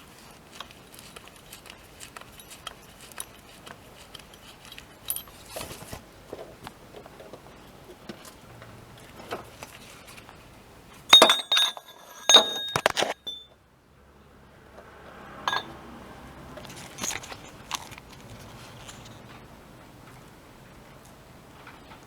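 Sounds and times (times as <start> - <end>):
metallic clinking and jangling: 0.1 - 6.0, 11.1 - 13.5, 15.4 - 15.8, 16.6 - 19.2
short ringing tones: 11.1 - 13.6, 15.5 - 15.8.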